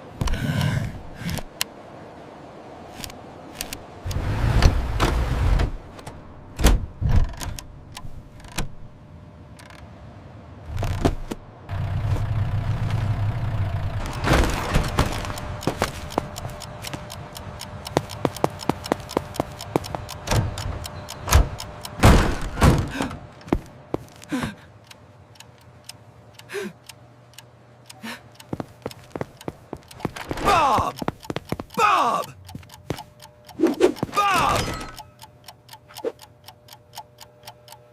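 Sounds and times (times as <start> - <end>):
low engine-like hum: 0.0 - 37.9
knocks thuds and clicks: 17.9 - 24.6.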